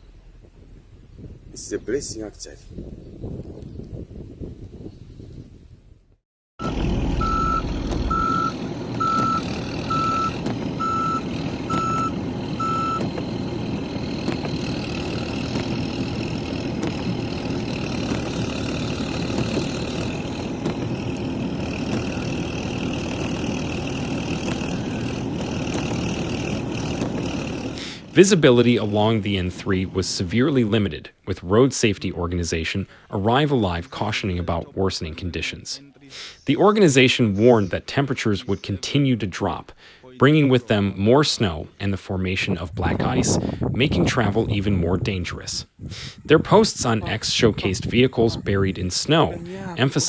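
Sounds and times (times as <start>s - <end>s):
steady vehicle noise: 0.0s - 50.0s
reversing alarm beeps: 6.6s - 14.0s.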